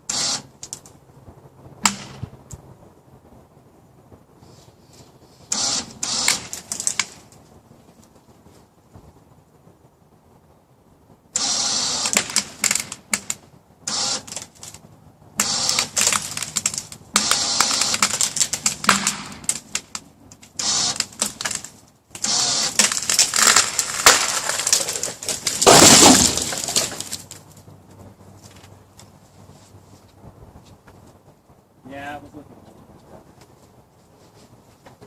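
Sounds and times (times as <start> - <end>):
tree cracking and splintering: 5.6 - 7.4, 11.4 - 14.8, 15.4 - 27.7
branches snapping and crunching: 15.4 - 27.7
tree crashing down: 15.4 - 27.7.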